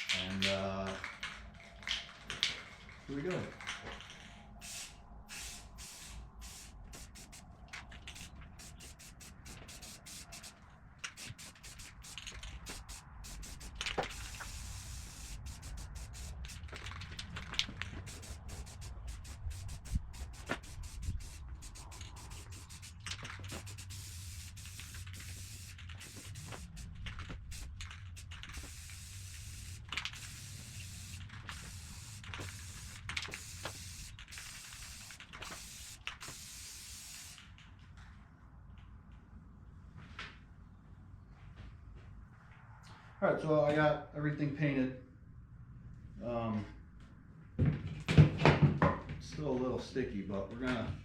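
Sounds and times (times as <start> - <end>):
spray paint can hissing: 4.6 - 37.6.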